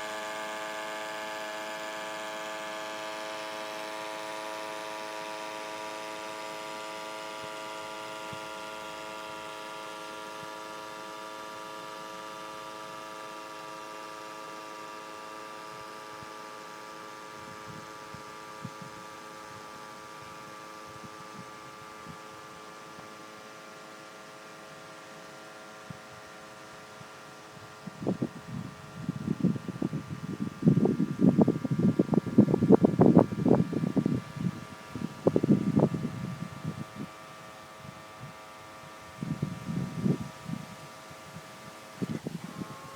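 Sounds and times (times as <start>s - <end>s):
model boat motor humming: 0.0s - 42.9s
wind buffeting microphone: 27.6s - 37.2s, 37.8s - 42.9s.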